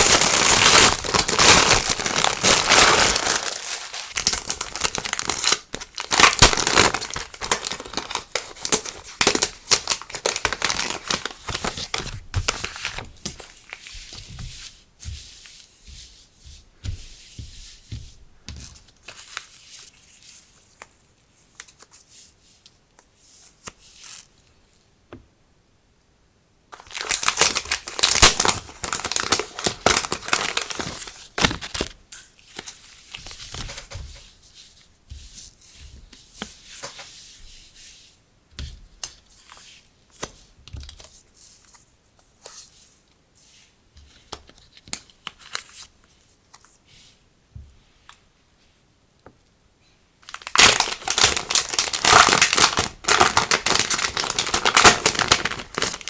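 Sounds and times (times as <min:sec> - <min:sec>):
plastic packaging crinkling: 0:00.0 - 0:14.5, 0:26.7 - 0:34.2, 0:50.2 - 0:56.0.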